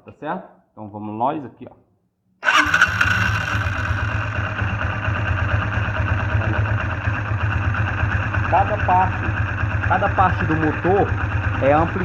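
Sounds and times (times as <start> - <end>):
motorcycle engine starting and idling: 2.4 - 12.0.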